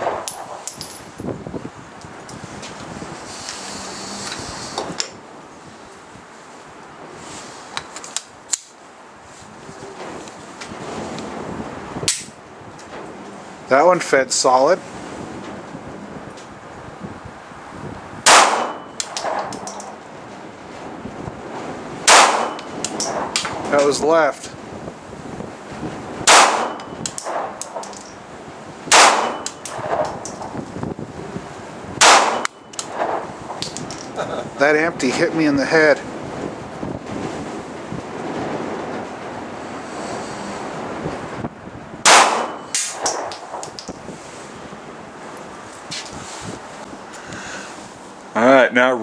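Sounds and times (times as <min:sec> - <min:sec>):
wind on microphone: 0:00.0 - 0:06.4, 0:14.8 - 0:18.7, 0:19.3 - 0:42.5, 0:43.1 - 0:48.0
gunshots: 0:18.3 - 0:18.8, 0:22.1 - 0:22.6, 0:26.3 - 0:26.8, 0:28.9 - 0:29.4, 0:32.0 - 0:32.4, 0:42.1 - 0:43.0
pistol shots: 0:18.3 - 0:18.8, 0:22.1 - 0:22.6, 0:26.3 - 0:27.5, 0:28.9 - 0:30.0, 0:32.0 - 0:32.5, 0:42.0 - 0:43.4
brass casings clinking: 0:18.6 - 0:20.2, 0:22.4 - 0:24.0, 0:26.5 - 0:28.2, 0:28.9 - 0:32.9, 0:33.6 - 0:34.2, 0:42.1 - 0:44.2.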